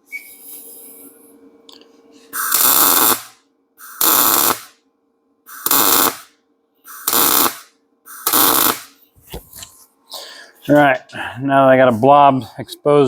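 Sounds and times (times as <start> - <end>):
welder arc crackling: 2.4 - 4.8, 5.5 - 6.3, 6.9 - 9.0.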